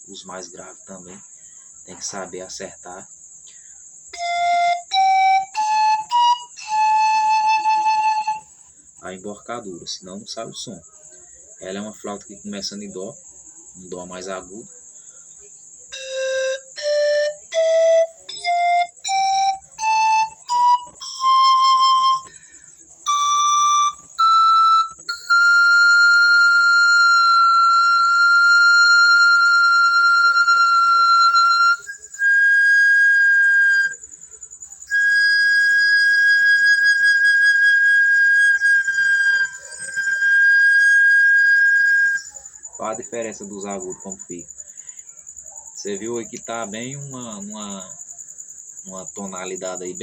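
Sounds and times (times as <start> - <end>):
pan flute notes rising: 4.2 - 8.5, 16.0 - 22.3, 23.0 - 34.0, 34.9 - 42.4
pan flute high note: 34.9 - 42.3.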